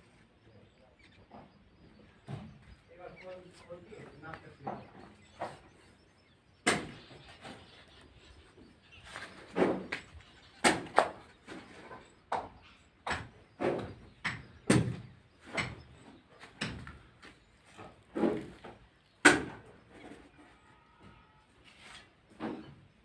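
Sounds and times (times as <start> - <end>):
sharp knocks and bangs: 6.6 - 7.2, 10.6 - 11.6, 12.3 - 17.0, 18.1 - 19.7.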